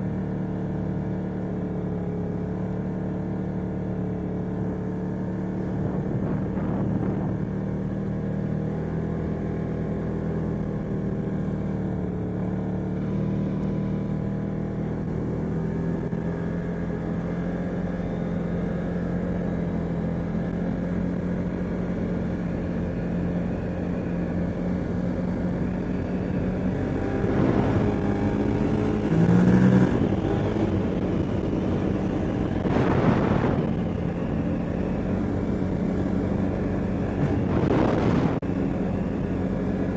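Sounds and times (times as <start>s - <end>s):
atv engine running: 0.0s - 39.9s.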